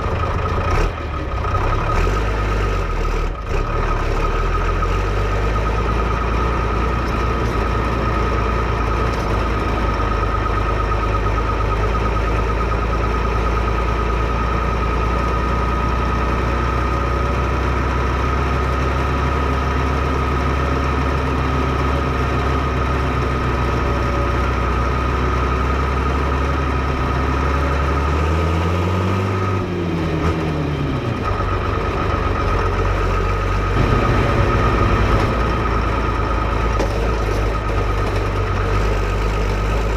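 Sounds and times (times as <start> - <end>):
tractor diesel engine idling: 0.0 - 39.9
steady high whine: 31.2 - 38.0.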